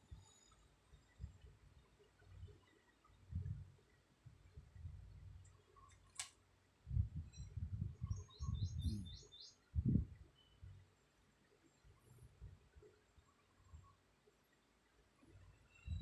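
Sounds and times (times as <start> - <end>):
bird chirping: 7.4 - 10.8.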